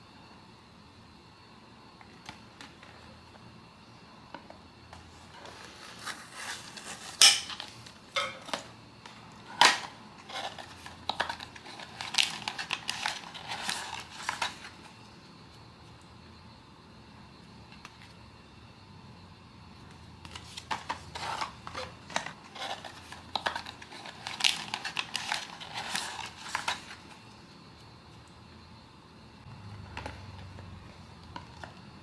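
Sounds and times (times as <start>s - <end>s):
cardboard and foil packaging crinkling: 5.4s - 7.9s, 9.5s - 14.9s, 20.3s - 27.2s.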